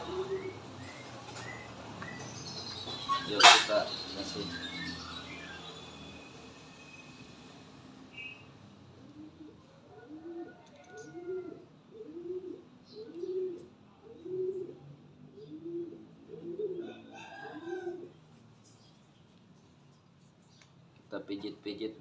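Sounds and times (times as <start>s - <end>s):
pigeon cooing: 0.0s - 2.2s, 9.0s - 18.2s.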